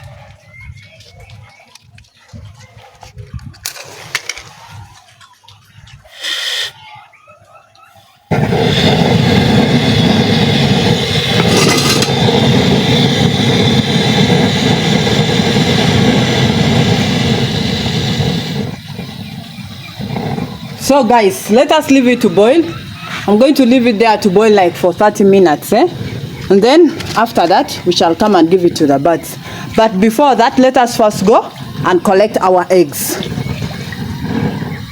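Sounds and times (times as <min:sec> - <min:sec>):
gas burner rushing: 0:08.3 - 0:34.9.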